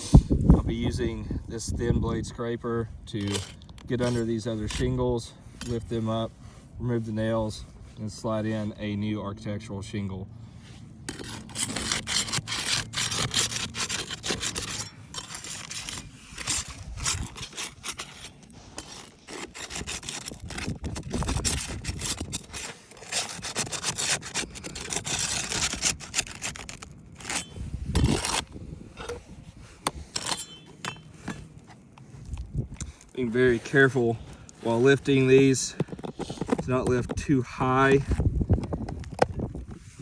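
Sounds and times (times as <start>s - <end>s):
scraper scraping roof shingles: 10.6s - 40.0s.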